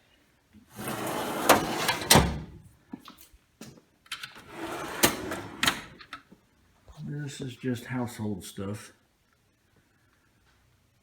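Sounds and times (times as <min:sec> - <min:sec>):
toolbox drawer sliding: 0:00.7 - 0:02.6, 0:04.4 - 0:06.0.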